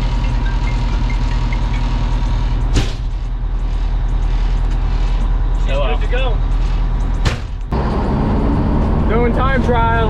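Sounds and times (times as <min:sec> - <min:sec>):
fire truck engine idling: 0:00.0 - 0:07.7
sharp bang: 0:07.2 - 0:07.7.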